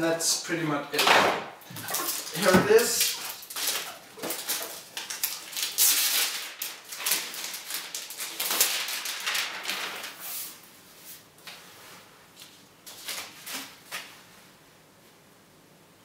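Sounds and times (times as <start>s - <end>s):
packaging rustling and scraping: 1.8s - 11.3s.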